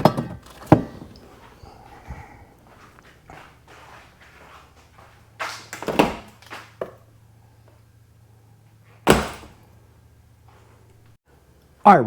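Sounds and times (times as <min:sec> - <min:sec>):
rustling and knocking of handled things: 0:00.0 - 0:07.9
steady low hum: 0:00.0 - 0:11.8.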